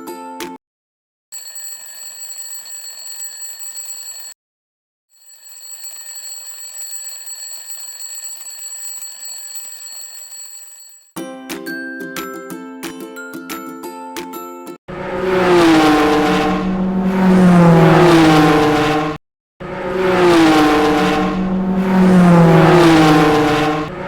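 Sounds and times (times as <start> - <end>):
alarm clock bell ringing: 1.4 - 4.4, 5.2 - 11.1.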